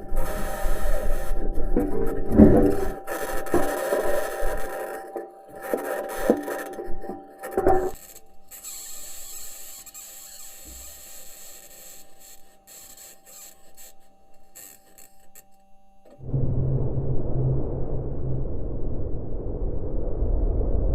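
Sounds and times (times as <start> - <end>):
rasping scraping hiss: 0.0 - 16.2
rattling ticks: 0.0 - 16.2
squeals: 0.0 - 16.2
loud low rumble: 16.2 - 20.9.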